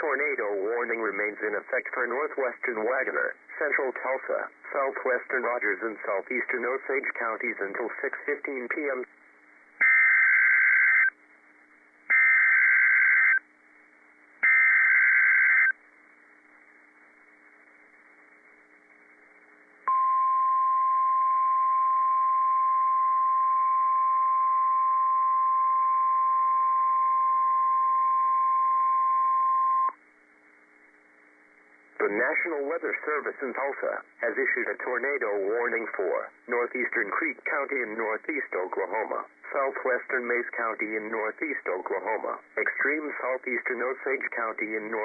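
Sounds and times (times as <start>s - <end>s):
steady warning alarm tone: 9.8s - 11.1s, 12.1s - 13.4s, 14.4s - 15.8s.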